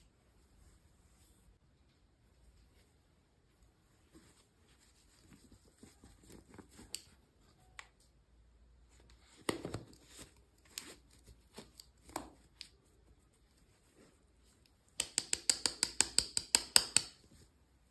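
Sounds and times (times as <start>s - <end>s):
plastic toys and packaging handled: 4.0s - 8.2s, 8.8s - 15.0s.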